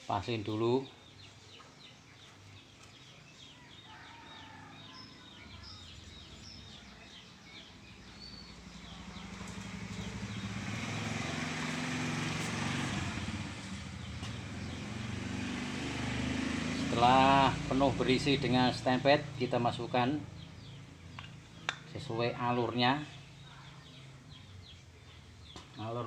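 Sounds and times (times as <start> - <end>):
bird calls and clucking: 1.1 - 11.0.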